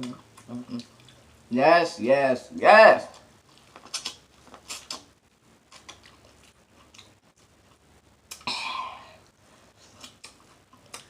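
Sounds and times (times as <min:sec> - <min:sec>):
wet mouth smacks and clicks: 0:03.8 - 0:05.1
person coughing: 0:08.5 - 0:09.2.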